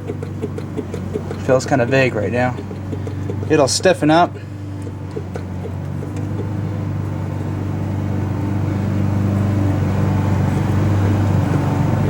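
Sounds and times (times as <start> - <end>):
rough rattly noise: 0.0 - 7.6
low mechanical hum: 0.0 - 12.0.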